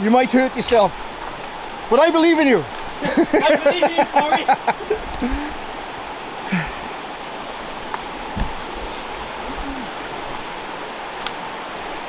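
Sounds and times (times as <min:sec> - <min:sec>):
river water rushing: 0:00.0 - 0:12.0
faint vocal sounds: 0:06.4 - 0:10.7.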